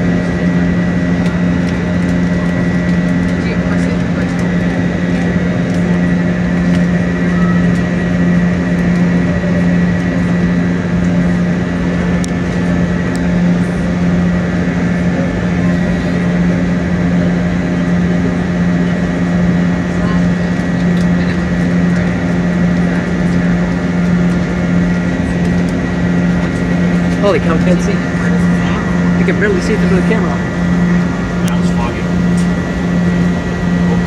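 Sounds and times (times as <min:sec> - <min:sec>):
airliner cabin drone: 0:00.0 - 0:34.0.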